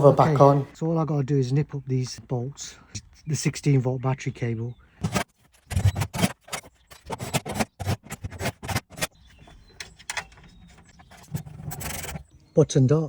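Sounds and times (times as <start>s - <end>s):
hand tools clicking on metal: 5.0s - 9.1s.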